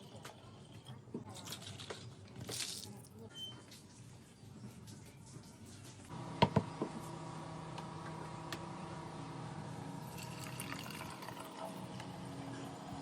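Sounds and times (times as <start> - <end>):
water pump humming: 6.1 - 13.0.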